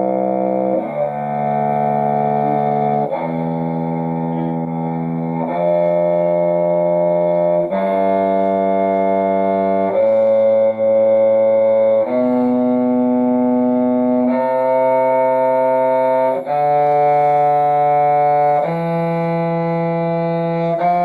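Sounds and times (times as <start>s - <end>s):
bowed string instrument scale: 0.0s - 21.0s.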